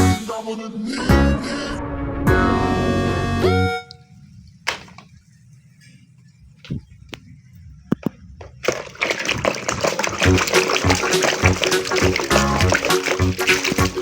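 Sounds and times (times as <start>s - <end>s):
water splashing: 8.6s - 14.0s.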